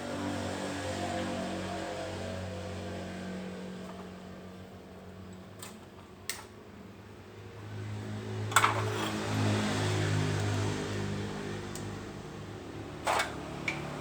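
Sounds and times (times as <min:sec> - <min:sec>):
low mechanical hum: 0:00.0 - 0:09.6.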